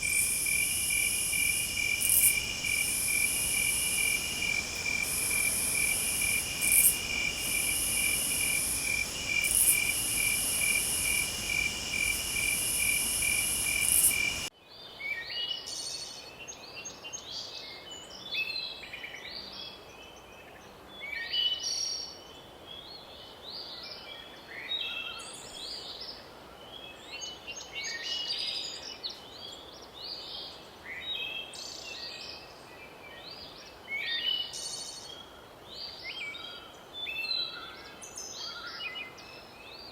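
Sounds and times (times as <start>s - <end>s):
forest birds chirping: 0.0s - 14.5s
high insect buzz: 0.0s - 14.5s
insects trilling: 0.0s - 14.5s.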